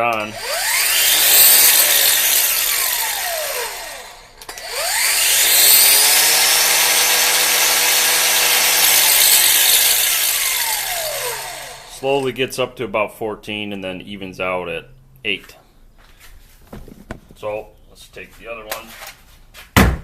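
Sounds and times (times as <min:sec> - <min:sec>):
angle grinder motor whine: 0:00.1 - 0:12.0.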